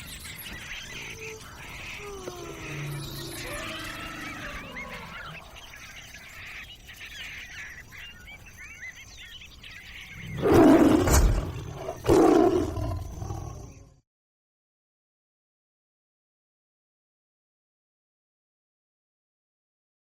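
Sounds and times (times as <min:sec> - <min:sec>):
faint bird chirps: 0:00.0 - 0:14.0
jungle ambience: 0:00.0 - 0:14.0
big cat roars: 0:02.0 - 0:05.5, 0:10.2 - 0:14.0.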